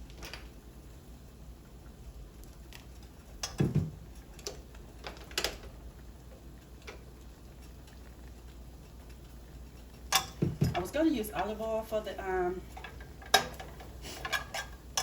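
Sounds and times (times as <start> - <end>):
utensils clicking on cookware: 10.0 - 11.5, 12.8 - 15.0.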